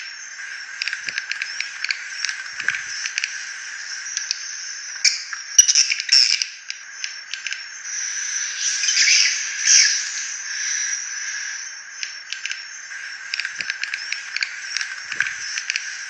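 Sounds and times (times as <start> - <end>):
high insect-like drone: 0.0 - 5.8, 6.9 - 16.0
swiftlet twittering chirps: 7.0 - 16.0.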